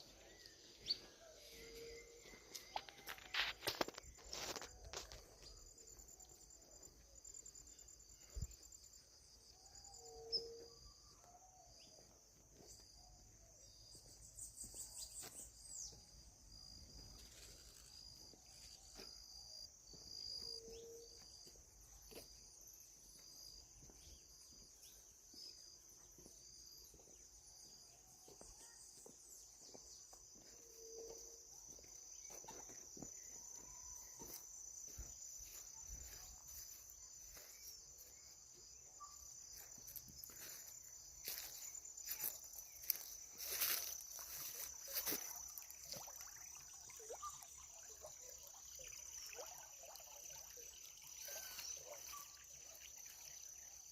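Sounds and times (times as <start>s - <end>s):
high-pitched insect trilling: 39.0s - 53.9s.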